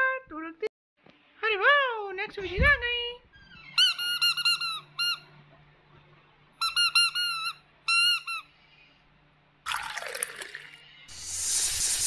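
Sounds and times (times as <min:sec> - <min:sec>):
squeaky toy squeaking: 0:03.4 - 0:05.3, 0:06.6 - 0:08.5.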